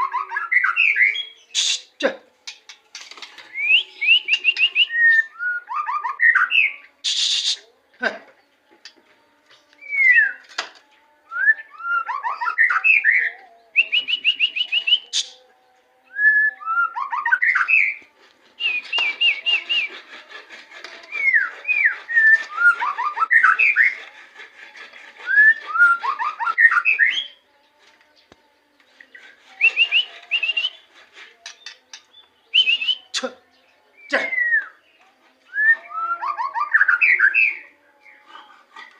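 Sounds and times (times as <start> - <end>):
songbird singing whistled phrases: 0.0 - 1.9, 3.5 - 7.6, 9.8 - 10.4, 11.3 - 15.4, 18.6 - 19.9, 25.3 - 27.4, 29.6 - 33.3, 33.9 - 37.7.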